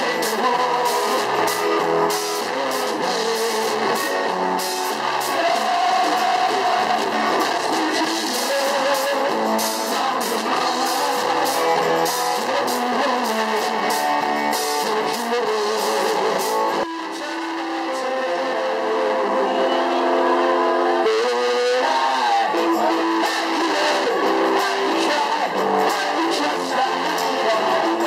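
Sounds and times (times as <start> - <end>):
drums and cymbals: 0.0 - 17.6, 22.5 - 28.0
electric guitar: 0.0 - 28.0.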